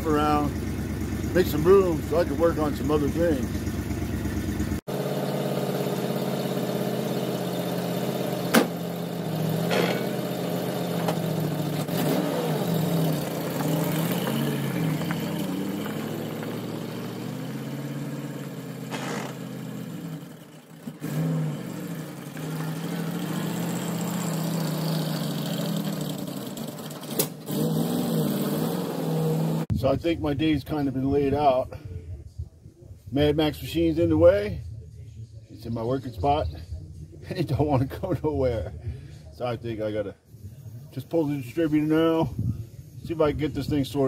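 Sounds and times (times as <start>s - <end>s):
vehicle engine revving: 0.0s - 29.7s.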